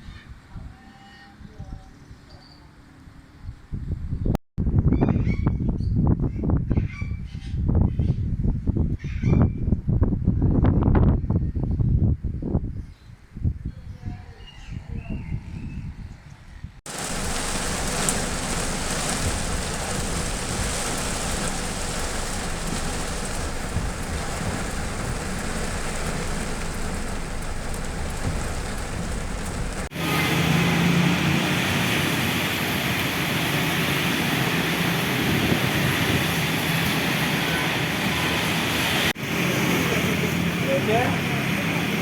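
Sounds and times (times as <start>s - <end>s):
low hum: 16.9s - 29.9s
heavy rain pouring: 16.9s - 42.0s.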